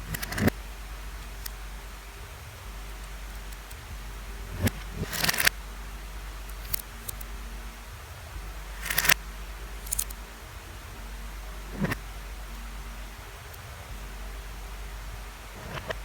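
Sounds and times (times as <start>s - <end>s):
plastic pieces clicking: 8.8s - 9.2s, 9.8s - 10.2s.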